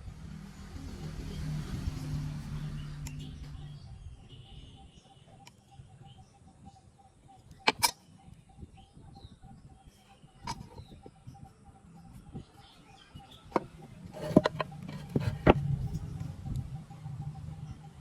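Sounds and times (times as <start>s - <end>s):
faint bird chirps: 2.0s - 18.0s
woodworking knocks and taps: 13.5s - 15.6s.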